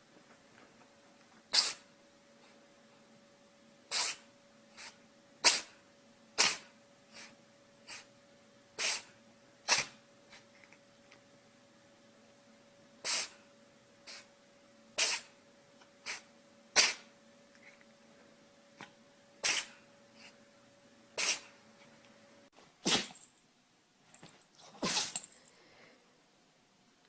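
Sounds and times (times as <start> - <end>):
faint steady hum: 0.0 - 27.0
pet sneezing: 1.5 - 1.9, 3.9 - 5.8, 6.4 - 7.3, 8.8 - 10.4, 13.0 - 13.4, 15.0 - 15.3, 16.0 - 17.1, 19.4 - 19.8, 21.2 - 21.6, 22.8 - 23.4, 24.2 - 25.5.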